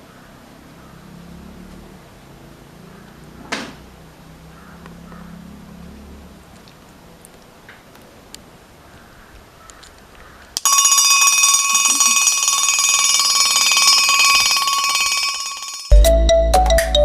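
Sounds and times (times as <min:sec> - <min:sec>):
shrill pulsing alarm ringing: 0:10.6 - 0:15.9.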